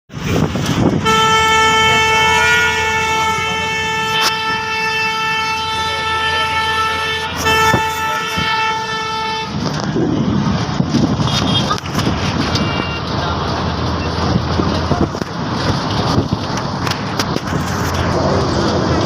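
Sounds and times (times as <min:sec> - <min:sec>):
traffic rumble: 0:00.1 - 0:19.0
bus horn blast: 0:00.9 - 0:09.9, 0:11.2 - 0:13.1.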